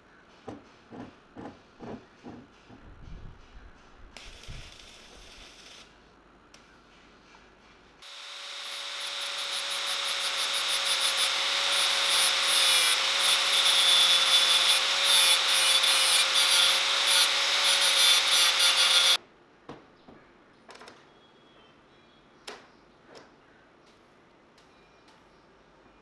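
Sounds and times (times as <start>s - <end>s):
power tool grinding: 4.2s - 5.9s, 8.0s - 19.2s.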